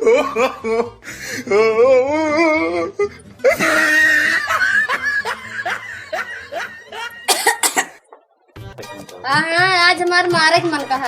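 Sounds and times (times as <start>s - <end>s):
person laughing: 0.0s - 7.0s.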